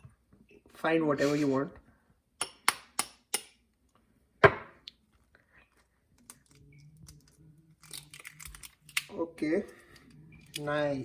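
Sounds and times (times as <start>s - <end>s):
faint low hum: 3.8s - 11.0s.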